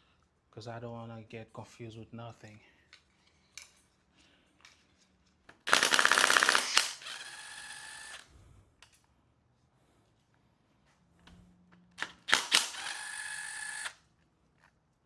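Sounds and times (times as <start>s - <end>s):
power tool motor whine: 5.7s - 8.3s, 12.2s - 14.0s.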